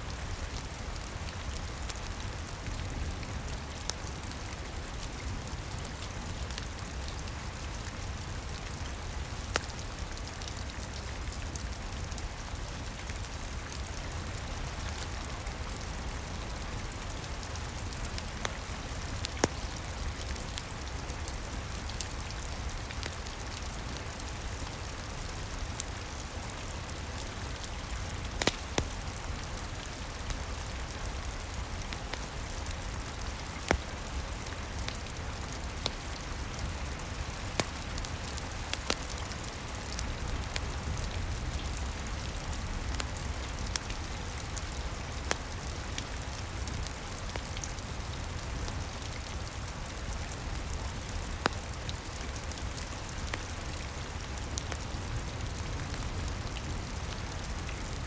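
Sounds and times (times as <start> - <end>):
crackling wood fire: 0.0 - 58.0
steady rain: 0.0 - 58.0
fire pops: 28.2 - 29.3, 33.4 - 36.2.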